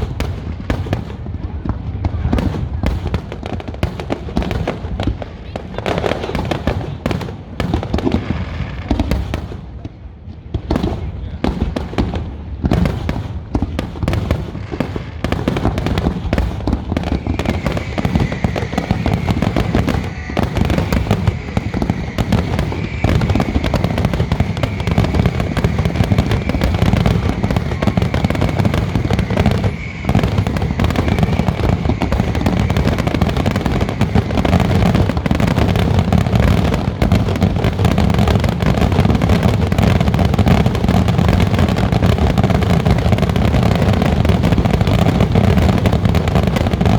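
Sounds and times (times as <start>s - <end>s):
fireworks bangs and crackles: 0.0s - 46.9s
high whistle: 17.0s - 37.0s.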